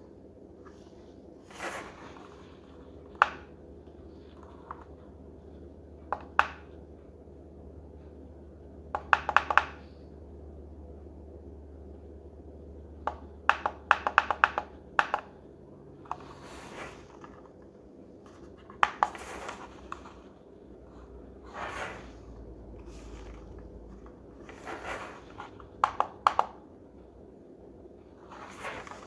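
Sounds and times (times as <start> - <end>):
alarm clock buttons clicking: 9.0 - 9.8, 13.1 - 15.4, 25.8 - 26.6
handling rustles: 16.1 - 25.8, 28.1 - 29.0.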